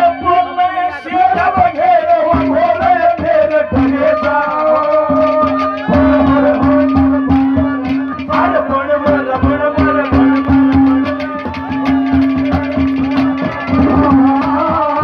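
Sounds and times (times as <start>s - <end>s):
fast steady drumming: 0.0s - 15.0s
melody instrument holding long notes: 5.4s - 14.5s.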